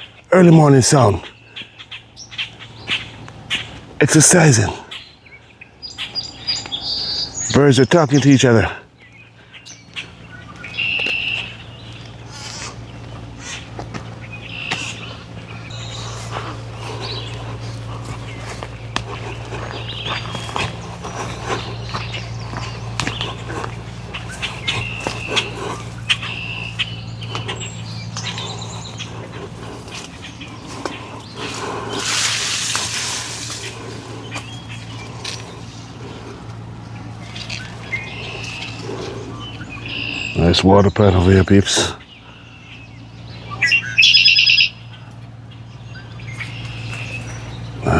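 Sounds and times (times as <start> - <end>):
birds calling: 0.0 - 47.9
songbirds chirping and singing: 0.0 - 47.9
steady low hum: 0.0 - 47.9
rushing hiss: 31.9 - 34.1.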